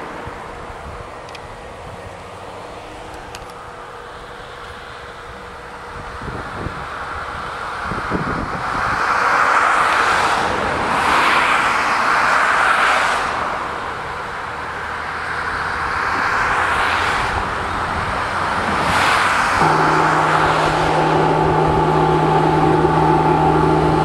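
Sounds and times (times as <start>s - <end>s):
outdoor warning siren: 19.6s - 24.0s.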